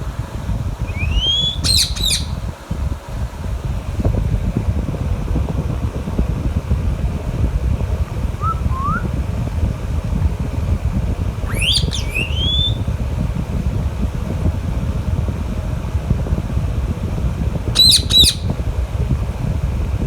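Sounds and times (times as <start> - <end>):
steady low rumble: 0.0 - 20.0
parrot whistling and calling: 0.9 - 2.4, 8.4 - 9.0, 11.5 - 12.9, 17.8 - 18.5.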